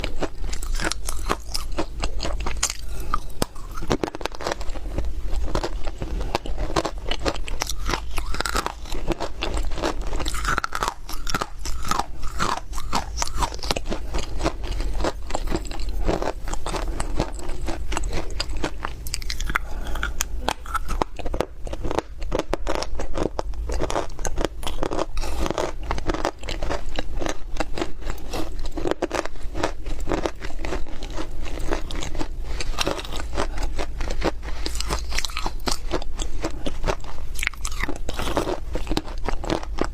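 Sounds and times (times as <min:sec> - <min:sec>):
crunching of chewed dry clay: 0:00.0 - 0:39.9.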